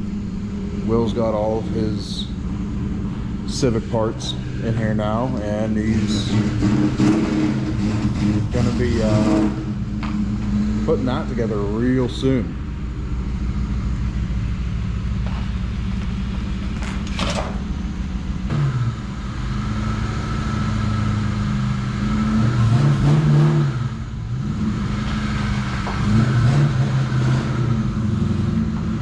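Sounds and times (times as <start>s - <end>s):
car engine revving: 0.0s - 29.0s.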